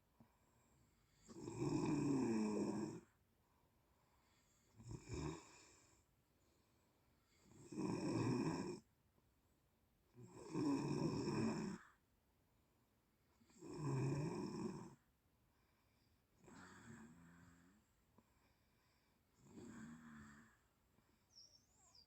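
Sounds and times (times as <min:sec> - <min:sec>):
person snoring: 0:01.2 - 0:03.1, 0:04.7 - 0:05.8, 0:07.4 - 0:08.8, 0:10.2 - 0:12.0, 0:16.4 - 0:17.9, 0:19.4 - 0:20.7.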